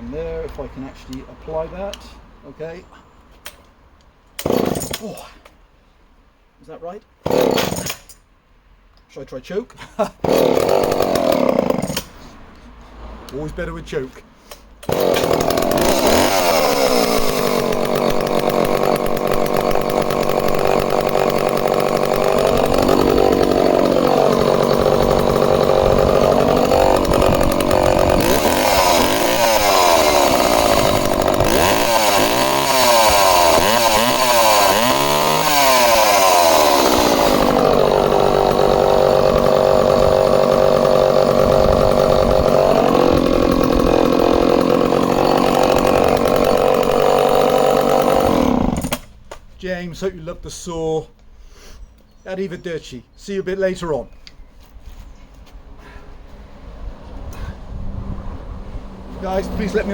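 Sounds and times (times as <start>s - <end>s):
chainsaw idling and revving: 4.4s - 5.2s, 7.2s - 8.1s, 10.2s - 12.2s, 14.8s - 49.1s, 59.2s - 59.9s.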